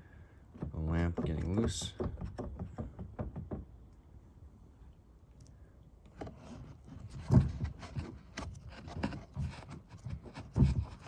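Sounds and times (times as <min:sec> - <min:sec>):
hands knocking and rubbing plastic: 0:00.5 - 0:03.7, 0:06.1 - 0:11.0.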